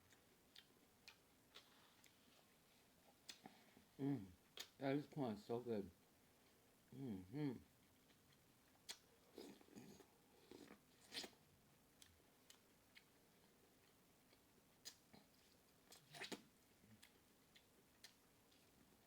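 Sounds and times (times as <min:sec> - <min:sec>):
chewing: 0:00.0 - 0:03.6, 0:12.0 - 0:18.8.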